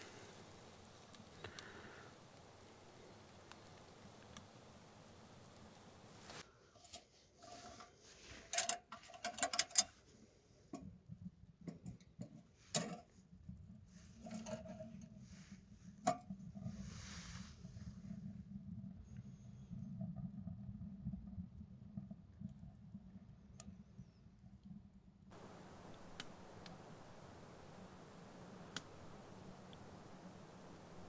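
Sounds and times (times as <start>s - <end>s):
twigs crackling and popping in stove: 0.0s - 6.4s, 25.4s - 31.0s
low steady draught: 0.0s - 6.8s, 15.2s - 21.2s, 25.3s - 31.0s.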